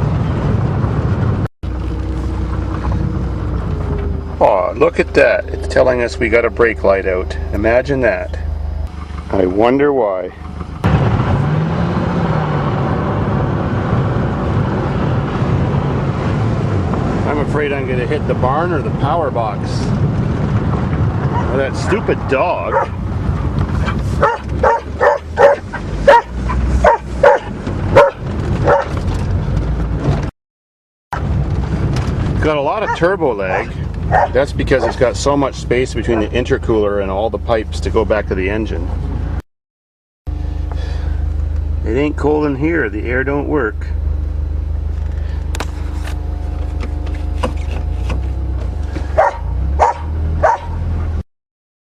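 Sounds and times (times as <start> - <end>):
car engine running: 0.0 - 30.3, 31.2 - 39.4, 40.3 - 51.2
dog barking: 21.3 - 21.6, 22.7 - 23.0, 24.2 - 28.9, 32.8 - 35.0, 49.2 - 50.8.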